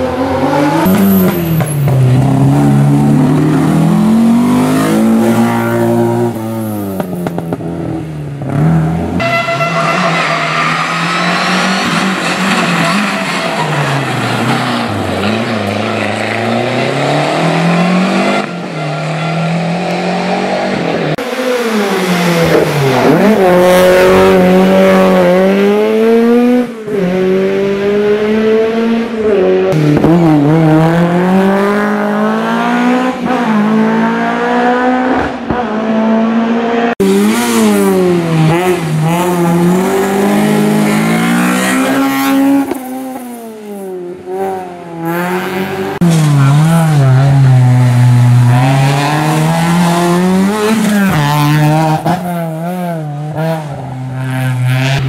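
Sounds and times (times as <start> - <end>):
rally car engines revving: 0.0 - 55.0.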